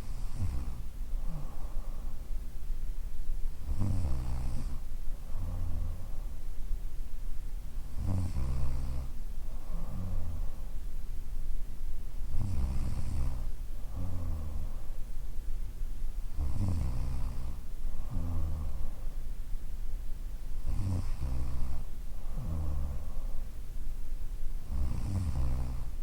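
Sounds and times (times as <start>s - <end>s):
woman snoring: 0.0s - 1.8s, 3.7s - 6.1s, 8.0s - 10.6s, 12.4s - 14.7s, 16.4s - 18.9s, 20.6s - 23.3s, 24.7s - 26.0s.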